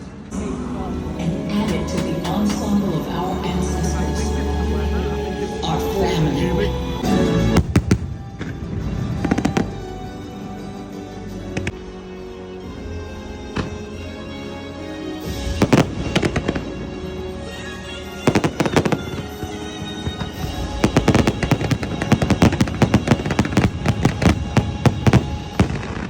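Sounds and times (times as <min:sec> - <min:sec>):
orchestral soundtrack: 0:00.0 - 0:26.0
fireworks bursting: 0:07.5 - 0:10.8, 0:15.2 - 0:26.0.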